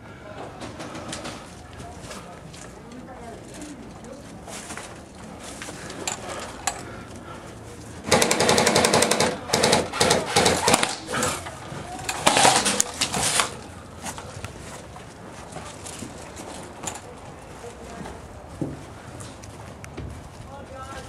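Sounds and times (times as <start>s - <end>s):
airsoft rifle full-auto bursts: 8.0s - 11.3s, 12.2s - 12.9s.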